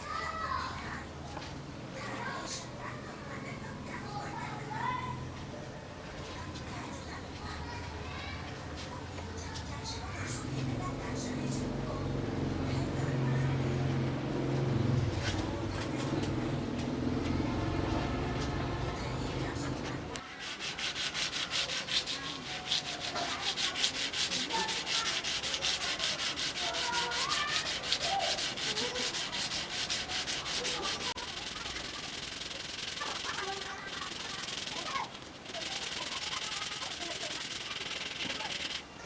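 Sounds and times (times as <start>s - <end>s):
rhythmic abrasive rubbing: 10.5s - 39.0s
machine hum: 11.6s - 39.0s.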